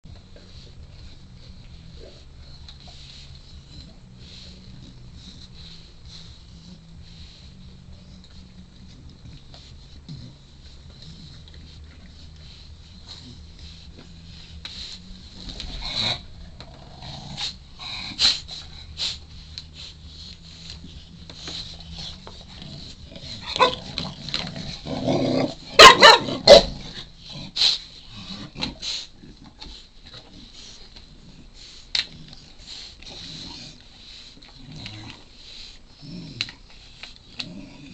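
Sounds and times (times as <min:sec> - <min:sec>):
puppy barking: 0:23.5 - 0:23.8, 0:25.8 - 0:26.7.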